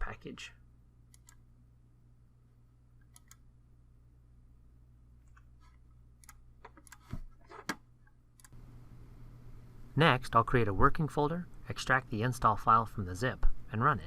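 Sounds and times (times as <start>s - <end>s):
low electrical hum: 0.0s - 14.0s
computer mouse clicks: 1.1s - 1.4s, 3.0s - 3.4s, 6.2s - 7.2s, 8.4s - 8.6s.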